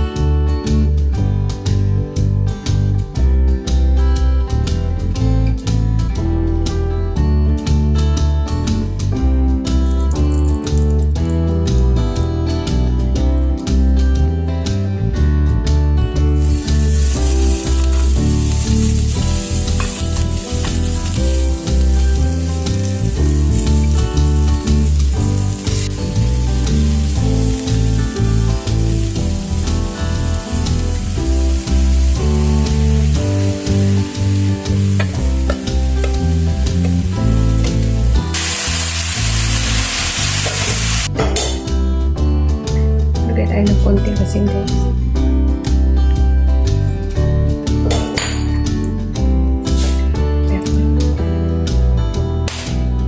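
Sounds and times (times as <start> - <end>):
background music: 0.0 - 53.0
food sizzling in oil: 16.3 - 41.2.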